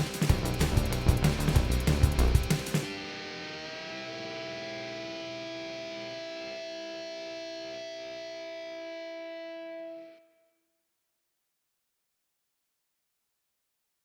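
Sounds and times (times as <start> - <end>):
distorted electric guitar chord: 0.0 - 10.1.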